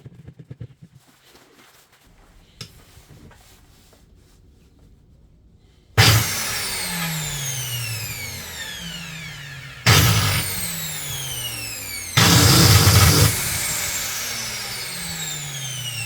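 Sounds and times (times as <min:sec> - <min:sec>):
angle grinder motor whine: 0:06.0 - 0:16.0.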